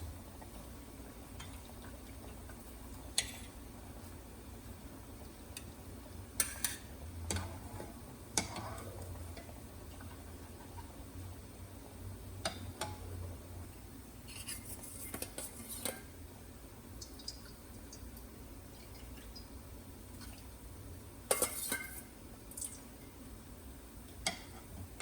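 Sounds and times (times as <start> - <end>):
dishes and utensils clinking: 21.3 - 22.1.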